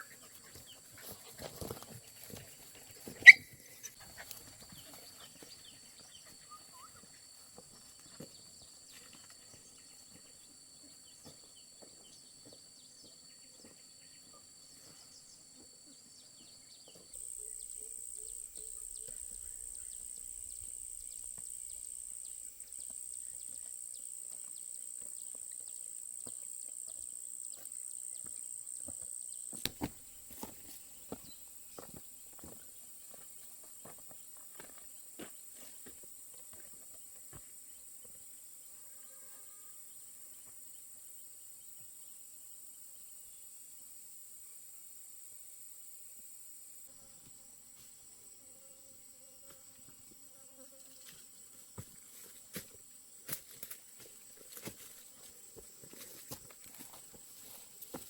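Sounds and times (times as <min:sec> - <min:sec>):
sharp animal cry: 0:03.2 - 0:03.6.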